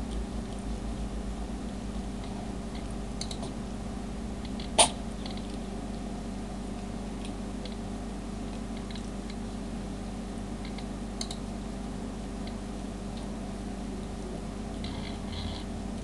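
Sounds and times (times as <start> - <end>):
cat sneezing: 4.8 - 5.0.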